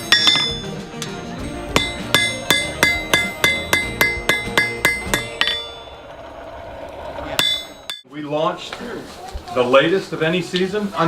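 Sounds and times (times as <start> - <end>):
hammer ringing on anvil: 0.0 - 6.0, 7.4 - 8.0.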